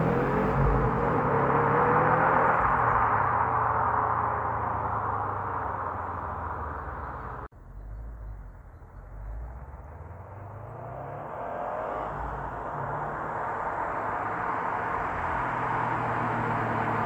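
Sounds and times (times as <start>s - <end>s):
car engine and exhaust: 0.0s - 17.0s
low engine rumble: 2.5s - 10.6s.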